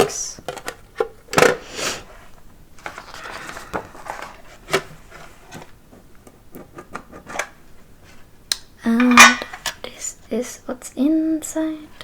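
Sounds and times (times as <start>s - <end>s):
metal tin box opening: 8.9s - 9.8s.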